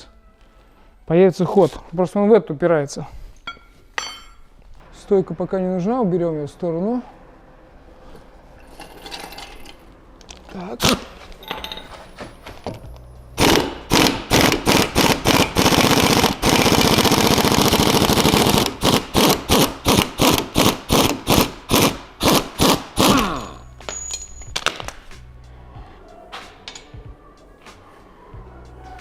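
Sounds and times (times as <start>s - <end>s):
impact wrench hammering: 13.4s - 24.9s
impact wrench falling whine: 22.7s - 24.9s.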